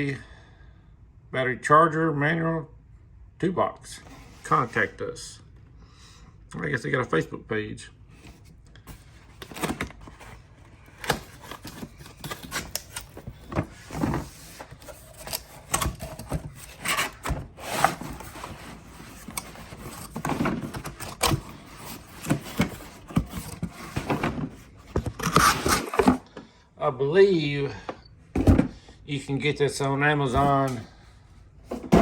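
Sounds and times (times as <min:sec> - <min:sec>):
cardboard box being handled: 0:08.3 - 0:26.2.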